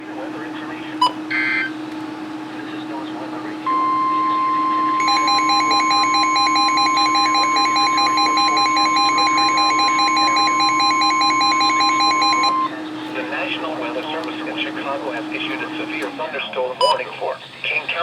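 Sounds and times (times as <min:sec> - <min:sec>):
steady alarm tone: 0:00.0 - 0:01.8, 0:02.9 - 0:16.0
rapid alert beeps: 0:03.7 - 0:12.7.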